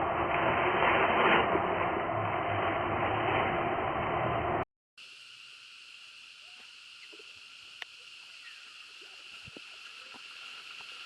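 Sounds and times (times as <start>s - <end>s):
high drone of insects: 5.0s - 11.0s.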